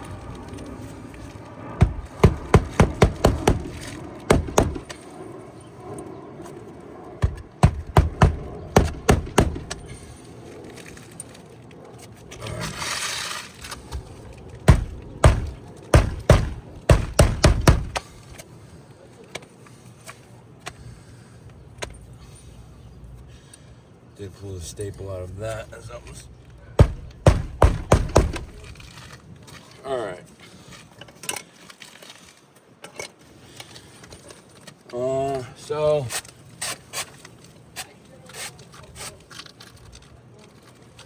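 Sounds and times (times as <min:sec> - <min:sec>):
hammer striking roofing nails: 0:01.8 - 0:05.0, 0:07.2 - 0:10.0, 0:13.9 - 0:18.2, 0:26.8 - 0:28.8
scraping rustle: 0:08.4 - 0:16.0, 0:28.2 - 0:35.1, 0:35.9 - 0:41.0.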